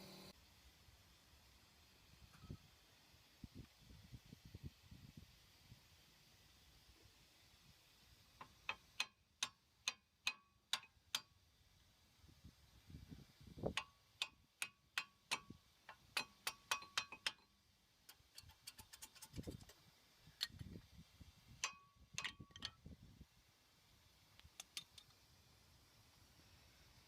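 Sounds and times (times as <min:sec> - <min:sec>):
metallic clicks of hand tools: 0:08.4 - 0:11.3, 0:13.7 - 0:19.8, 0:20.4 - 0:20.8, 0:21.6 - 0:22.9, 0:24.4 - 0:25.2.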